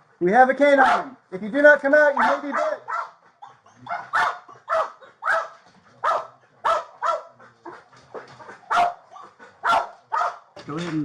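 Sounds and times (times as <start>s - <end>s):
dog barking: 0.8s - 1.2s, 2.2s - 7.4s, 8.6s - 10.5s.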